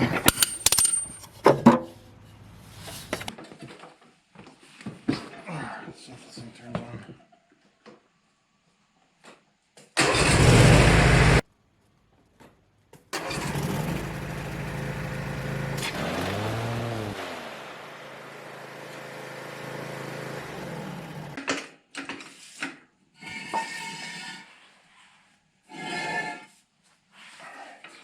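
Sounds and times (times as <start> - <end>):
riding mower engine running: 0.0 - 3.3, 10.0 - 11.4, 13.2 - 21.4.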